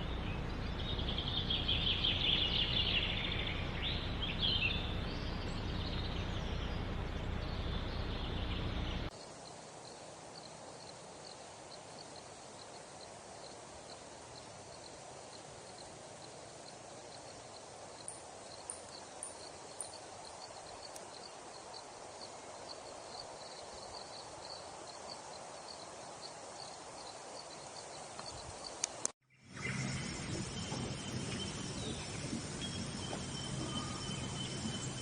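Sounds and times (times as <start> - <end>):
background hiss: 0.0 - 35.0
faint high insect chirp: 0.0 - 35.0.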